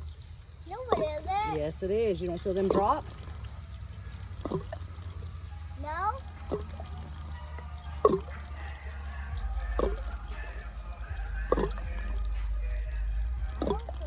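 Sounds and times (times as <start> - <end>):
low hum: 0.0 - 14.0
water dripping: 0.0 - 14.0.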